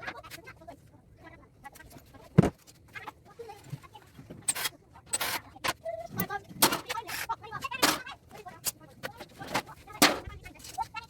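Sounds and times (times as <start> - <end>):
hand tools clicking and clinking: 4.4 - 10.8.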